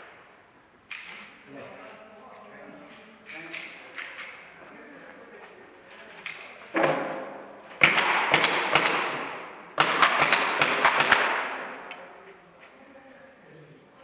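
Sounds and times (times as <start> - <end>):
airsoft gunfire cracks: 7.8 - 11.7.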